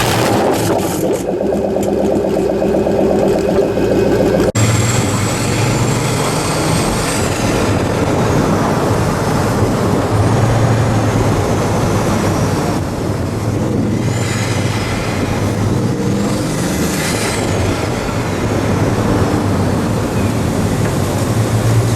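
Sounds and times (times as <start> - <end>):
street traffic hum: 0.0 - 21.9.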